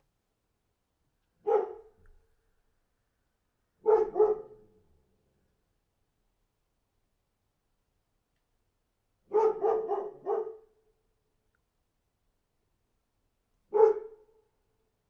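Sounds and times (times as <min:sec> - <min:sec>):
dog barking: 0:01.4 - 0:02.0, 0:03.8 - 0:04.7, 0:09.3 - 0:10.7, 0:13.7 - 0:14.3.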